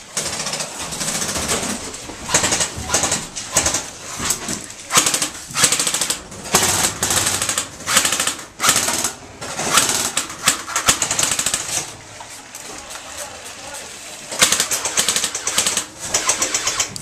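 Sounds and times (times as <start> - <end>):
airsoft guns firing bursts: 0.1 - 4.0, 4.9 - 12.0, 14.3 - 17.0.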